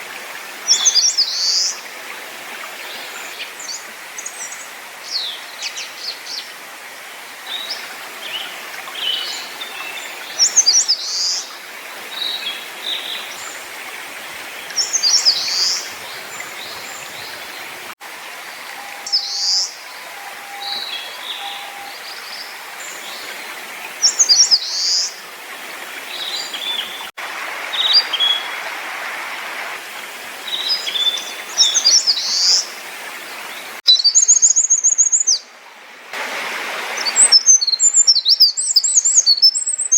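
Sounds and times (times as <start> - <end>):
background hiss: 0.0 - 27.1
songbirds singing: 7.4 - 25.2, 30.4 - 35.5, 37.0 - 39.9
bird chirps: 18.7 - 23.0, 33.9 - 35.4, 37.0 - 39.9.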